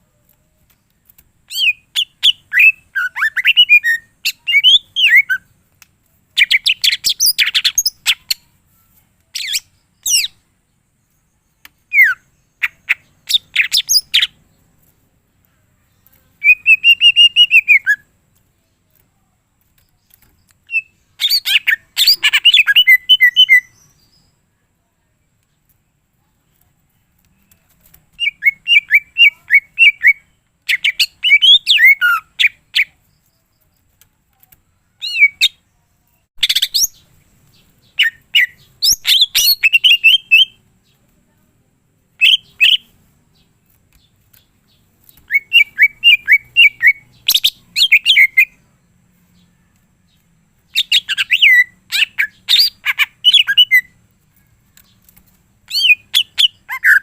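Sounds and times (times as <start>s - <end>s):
bird singing chirps and whistles: 1.5s - 5.5s, 9.4s - 10.4s, 11.6s - 14.4s, 16.4s - 18.1s, 20.6s - 24.3s, 28.2s - 32.9s, 35.0s - 35.6s, 36.4s - 40.6s, 42.2s - 42.9s, 45.1s - 48.6s, 50.7s - 54.0s, 55.7s - 57.0s.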